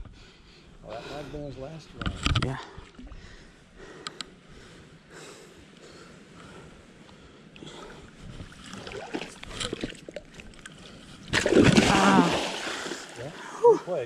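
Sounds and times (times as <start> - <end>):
water sloshing and lapping: 7.0 - 13.6.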